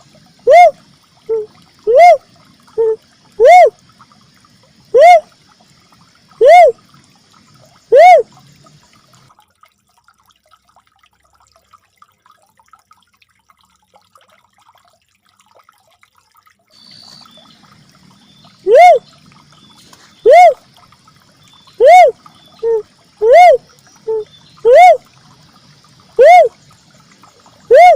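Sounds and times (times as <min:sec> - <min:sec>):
dove whooping calls: 0:00.4 - 0:02.2, 0:02.8 - 0:03.8, 0:04.9 - 0:05.3, 0:06.4 - 0:06.8, 0:07.9 - 0:08.3, 0:18.4 - 0:19.1, 0:19.8 - 0:20.6, 0:21.6 - 0:25.0, 0:26.2 - 0:26.6, 0:27.6 - 0:27.9.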